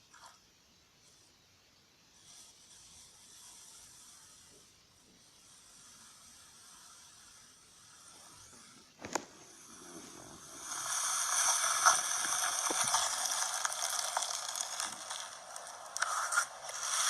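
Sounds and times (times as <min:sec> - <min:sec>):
slime squishing by hand: 0:09.0 - 0:17.0.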